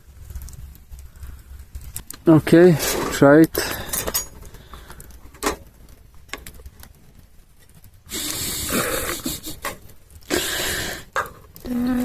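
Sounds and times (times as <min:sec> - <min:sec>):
person breathing out puffs: 0:10.3 - 0:11.1.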